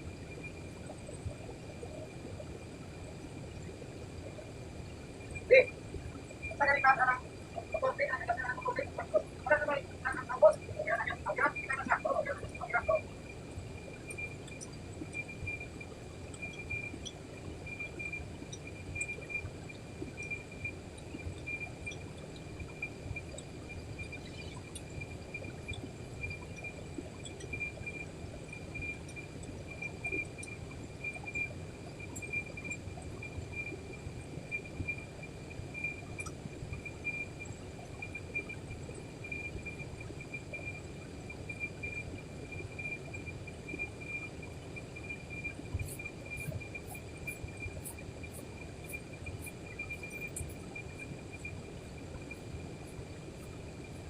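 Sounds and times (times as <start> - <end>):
low rumbling background noise: 0.0 - 54.0
insect trilling: 6.4 - 13.2, 45.0 - 51.5.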